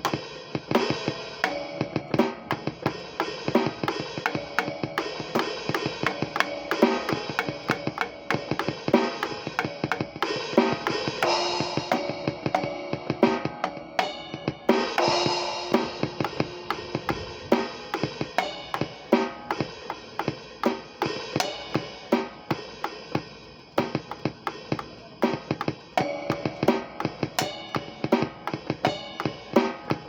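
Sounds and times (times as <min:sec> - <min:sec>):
bass drum: 0:00.0 - 0:21.9
snare and tom hits: 0:00.0 - 0:30.0
cymbal crashes: 0:00.2 - 0:19.7.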